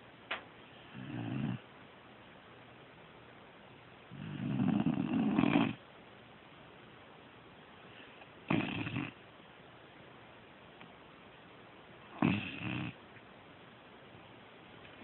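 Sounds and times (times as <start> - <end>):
snoring: 0.8 - 1.6, 4.1 - 5.8, 8.5 - 9.2, 12.2 - 13.0.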